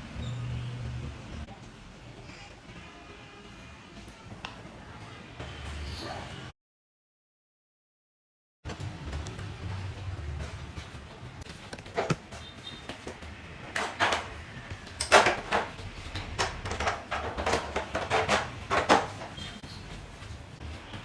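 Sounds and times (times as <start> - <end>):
hard objects clicking and knocking: 11.5 - 19.6.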